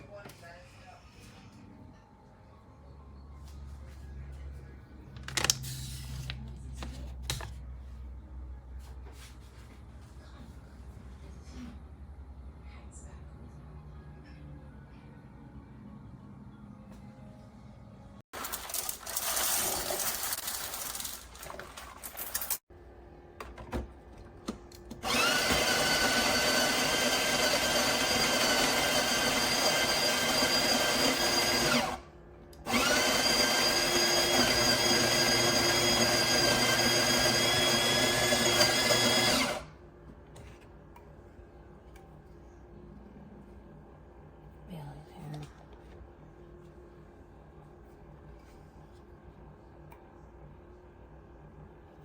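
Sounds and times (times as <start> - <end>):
coffee grinder motor whine: 25.0 - 32.0, 32.6 - 39.7.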